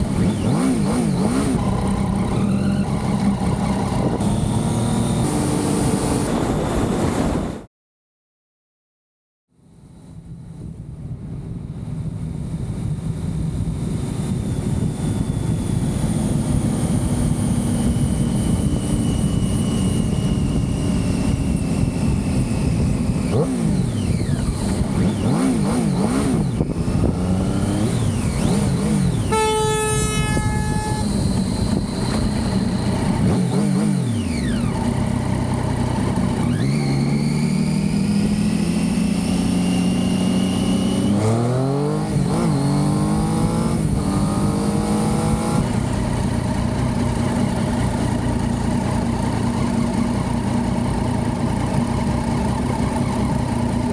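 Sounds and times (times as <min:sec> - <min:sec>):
motorcycle engine revving: 0:00.0 - 0:07.1, 0:13.4 - 0:53.9
horn beep: 0:29.1 - 0:32.5.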